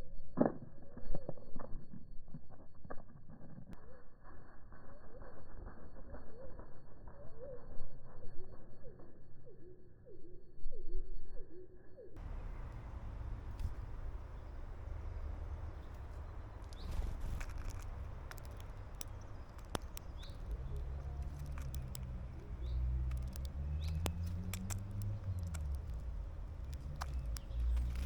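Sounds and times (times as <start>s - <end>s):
bird chirps: 12.2s - 28.0s
birds tapping at feeder: 12.2s - 28.0s
passing vehicle engine hum: 12.2s - 28.0s
steady low rumble: 12.2s - 28.0s.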